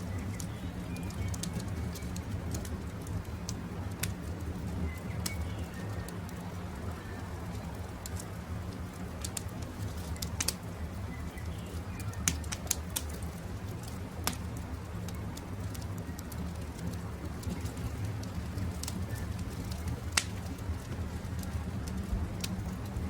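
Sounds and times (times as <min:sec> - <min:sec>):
campfire pops and snaps: 0:00.0 - 0:23.0
low steady rumble: 0:00.0 - 0:23.0
faint bird chirps: 0:04.7 - 0:07.4, 0:10.0 - 0:12.6.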